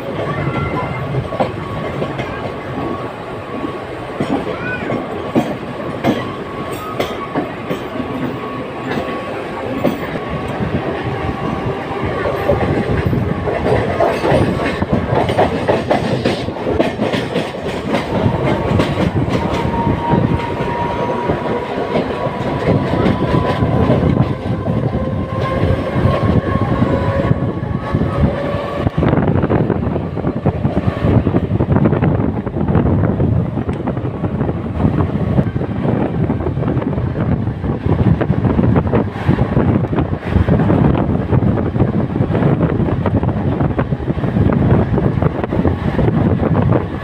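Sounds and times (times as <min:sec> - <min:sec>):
train rumble: 0:00.0 - 0:47.0
train wheels clattering over rail joints: 0:04.2 - 0:27.4.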